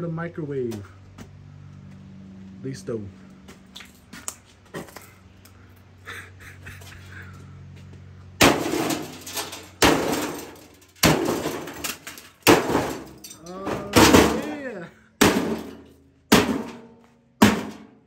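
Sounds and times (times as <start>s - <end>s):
heavy blows smashing microwave: 8.4s - 14.6s, 15.2s - 18.0s.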